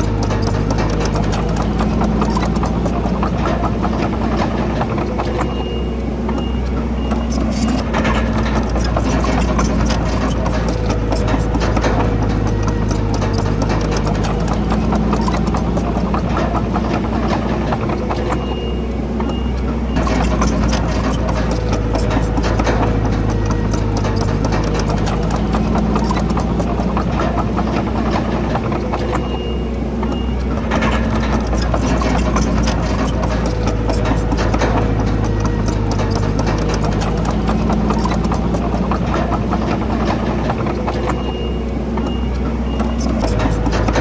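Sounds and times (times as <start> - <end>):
high squeal: 0.0 - 16.8
bulldozer diesel engine running: 0.0 - 44.0
steel tracks clanking: 0.0 - 44.0.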